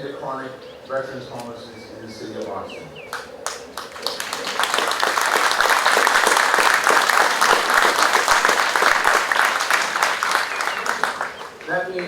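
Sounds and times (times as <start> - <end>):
audience applauding: 3.1 - 12.0.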